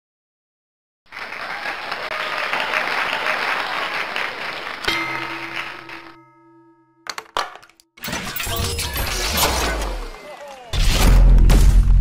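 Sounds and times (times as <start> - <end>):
crowd applauding: 1.1 - 6.2.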